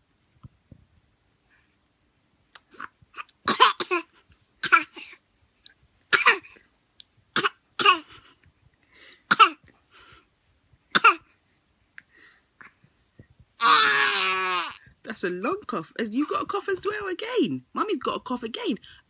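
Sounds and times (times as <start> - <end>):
baby coughing: 2.7 - 5.2, 6.1 - 6.6, 7.4 - 8.1, 9.3 - 9.7, 10.9 - 11.4, 13.6 - 14.8
woman coughing: 3.5 - 5.0.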